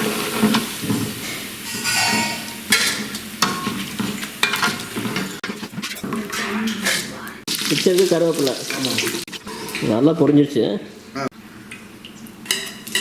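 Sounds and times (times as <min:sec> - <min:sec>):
rice sizzling in hot oil: 0:00.0 - 0:06.2, 0:07.4 - 0:09.4
stirring utensil knocking: 0:00.0 - 0:09.8.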